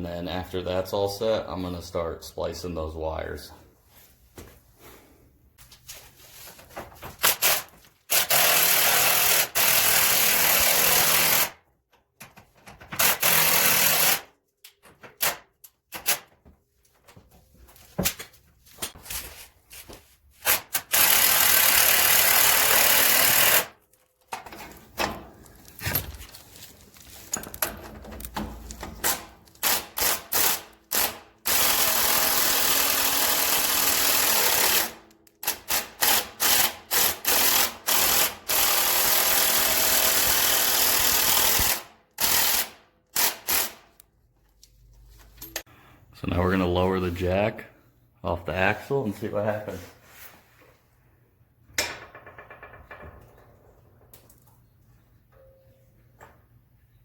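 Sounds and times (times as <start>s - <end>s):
impact wrench tightening bolts: 7.2s - 11.6s, 12.2s - 14.3s, 20.4s - 23.7s, 27.4s - 44.0s.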